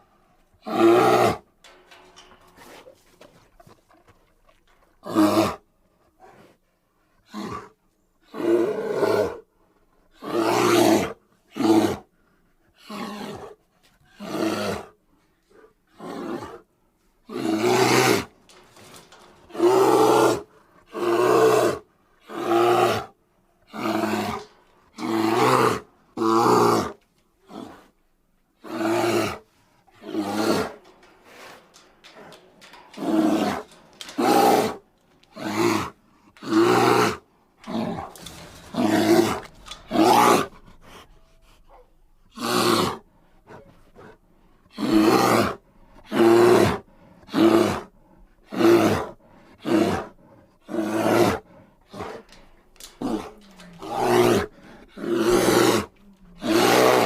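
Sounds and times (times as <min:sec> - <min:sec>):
bear roaring: 0:17.3 - 0:28.0, 0:28.6 - 0:57.0.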